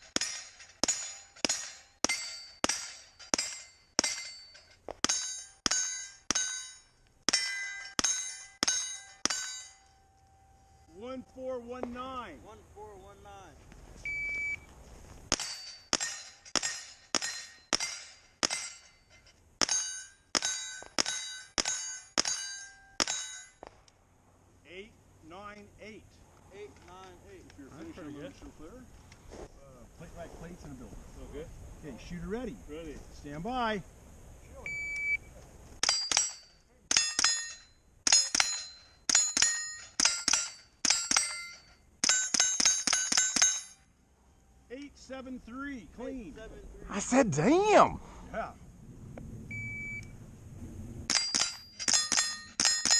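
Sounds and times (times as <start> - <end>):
steel plate clanging and ringing: 0.0 - 10.6, 15.3 - 23.6, 35.8 - 43.9, 51.1 - 52.9
rifle shots: 51.1 - 52.9.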